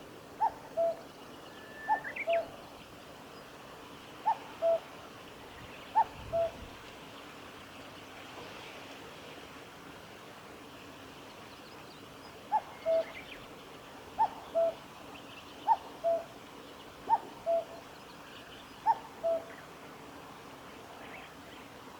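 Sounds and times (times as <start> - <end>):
small birds chirping faintly: 0.0 - 21.9
cuckoo calling: 0.4 - 1.0, 1.6 - 2.6, 4.2 - 4.9, 5.9 - 6.7, 12.5 - 13.2, 14.2 - 14.8, 15.6 - 16.3, 17.1 - 17.8, 18.8 - 19.6.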